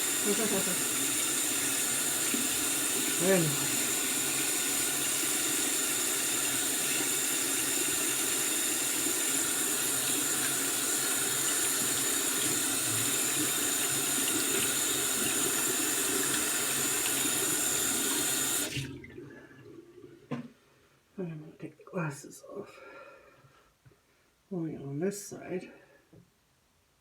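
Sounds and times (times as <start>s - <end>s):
tap water running into sink: 0.0s - 20.5s.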